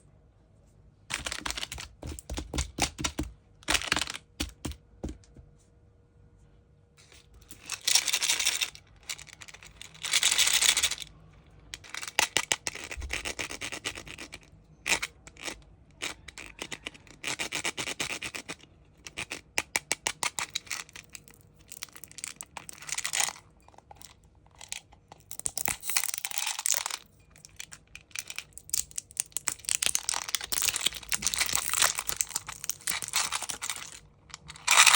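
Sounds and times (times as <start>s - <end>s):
sweet wrapper tearing and crinkling: 28.2s - 34.9s.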